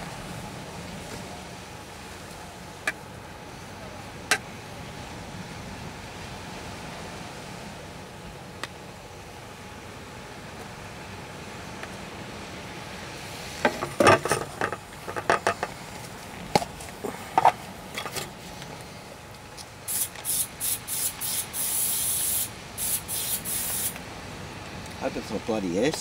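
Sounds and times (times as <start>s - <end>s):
objects clattering: 13.7s - 15.8s
aerosol spray can hissing: 19.9s - 24.0s.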